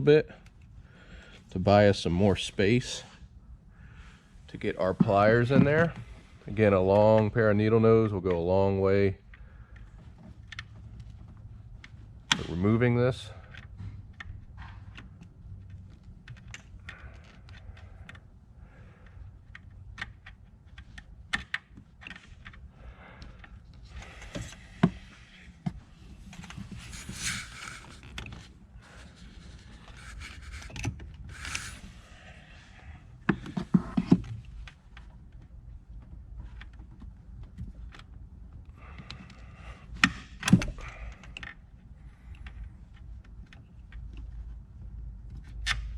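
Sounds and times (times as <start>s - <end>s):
rubber hose scraping rustles: 26.1s - 32.0s.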